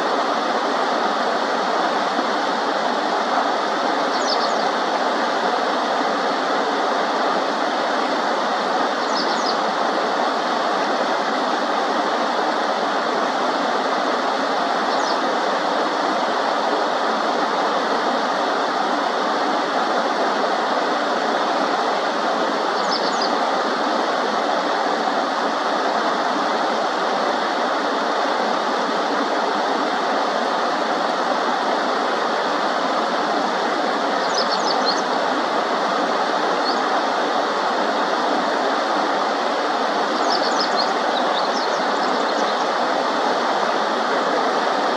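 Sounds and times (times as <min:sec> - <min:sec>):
shallow river water rushing: 0:00.0 - 0:44.9
faint high bird chirps: 0:04.1 - 0:04.6, 0:09.0 - 0:09.6, 0:14.9 - 0:15.2, 0:22.8 - 0:23.4, 0:34.2 - 0:35.1, 0:40.2 - 0:42.7.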